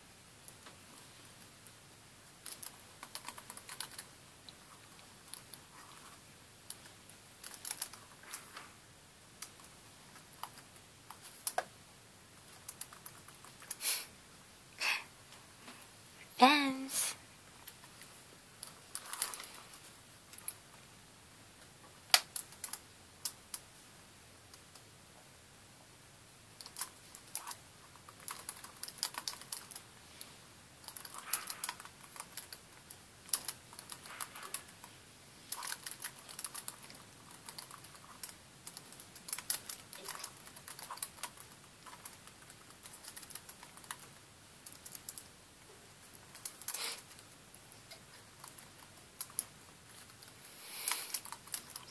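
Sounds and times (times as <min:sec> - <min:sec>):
keyboard typing: 0:02.5 - 0:04.1, 0:26.6 - 0:29.9, 0:35.5 - 0:45.3.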